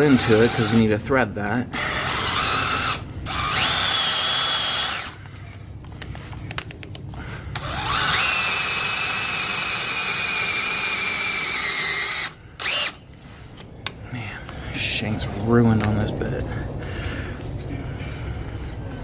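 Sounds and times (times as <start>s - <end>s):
electric drill drilling into metal: 0.0s - 0.8s, 1.7s - 5.2s, 7.6s - 13.0s.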